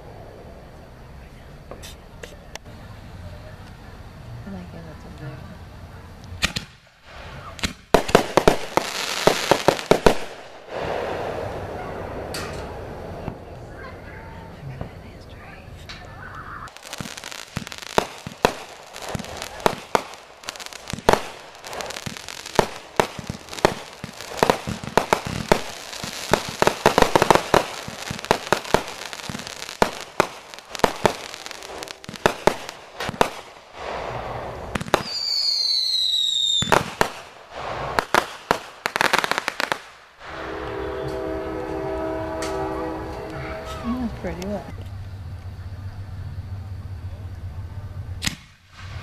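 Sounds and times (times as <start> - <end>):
fireworks bangs and pops: 6.4 - 13.7, 16.0 - 41.3, 48.2 - 49.0
firework falling whistle: 34.8 - 37.0, 39.6 - 44.1.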